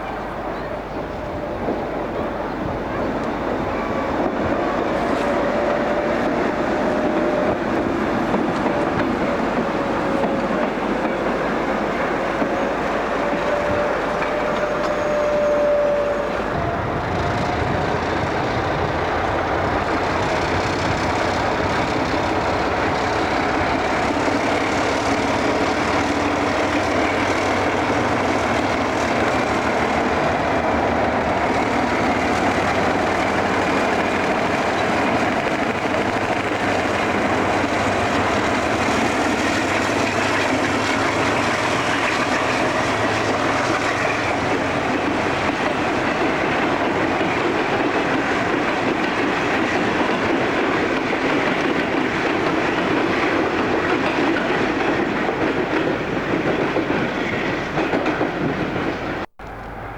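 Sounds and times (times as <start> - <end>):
train wheels rumbling on track: 0.0 - 59.9.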